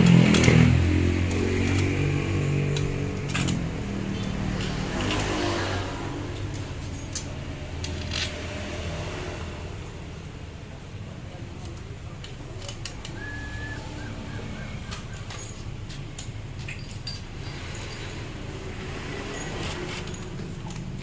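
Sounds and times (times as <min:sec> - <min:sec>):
metal tools clinking: 0:02.7 - 0:05.4, 0:11.6 - 0:21.0.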